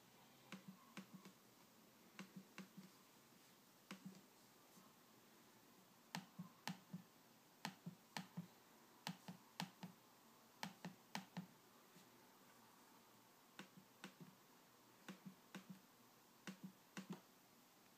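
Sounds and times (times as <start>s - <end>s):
trackpad clicks: 0.5s - 1.4s, 2.2s - 2.9s, 16.4s - 17.3s.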